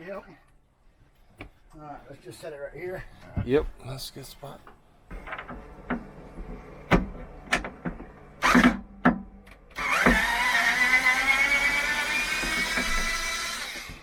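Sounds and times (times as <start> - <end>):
knocks of things handled: 5.1 - 10.2
electric power tool whining: 8.4 - 8.9, 9.6 - 14.0.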